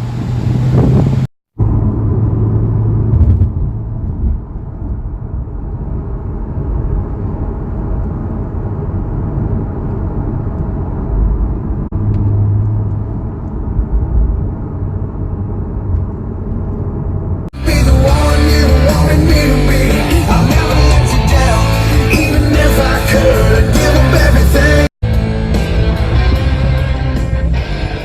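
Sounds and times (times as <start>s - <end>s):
car engine droning: 0.0s - 28.0s.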